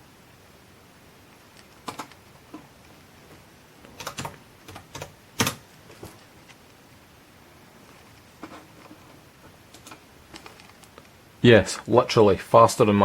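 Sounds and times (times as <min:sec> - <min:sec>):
computer keyboard clicks: 0:01.6 - 0:02.2, 0:04.0 - 0:05.6.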